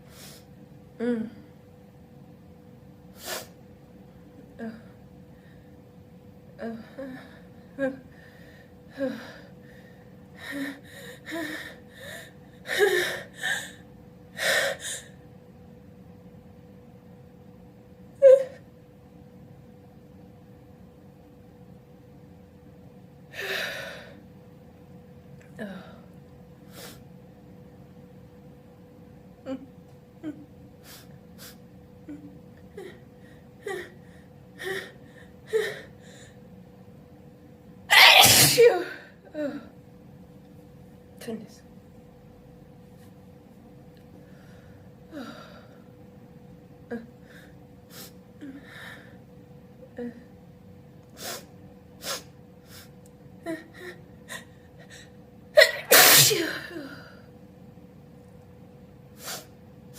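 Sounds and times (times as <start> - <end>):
person gasping breaths: 8.1 - 13.8
person sneezing: 37.9 - 39.0, 55.6 - 57.0.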